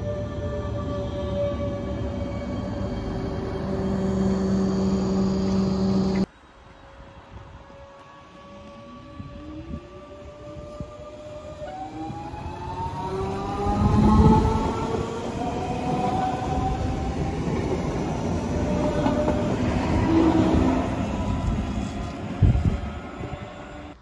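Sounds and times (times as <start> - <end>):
train rumble: 0.0 - 6.3, 7.2 - 24.0
electric train motor whine: 2.8 - 6.3.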